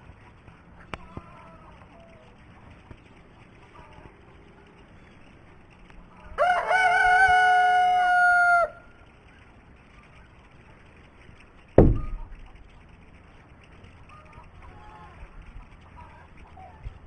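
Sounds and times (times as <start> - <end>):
rooster crowing: 6.2 - 8.9
sharp thump: 11.8 - 12.4.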